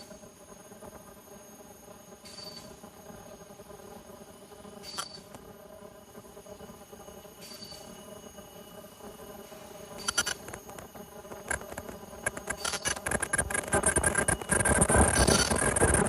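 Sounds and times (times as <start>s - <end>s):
machine humming: 8.9s - 16.0s
machine clicking and rattling: 11.4s - 16.0s.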